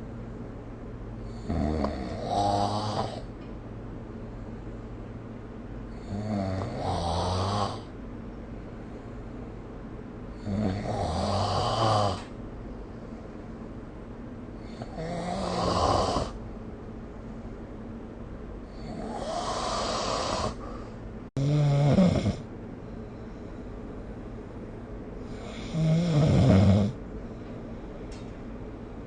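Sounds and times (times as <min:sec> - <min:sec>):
person snoring: 0:01.3 - 0:03.3, 0:06.0 - 0:07.9, 0:10.4 - 0:12.3, 0:14.6 - 0:16.4, 0:18.7 - 0:22.5, 0:25.3 - 0:27.0.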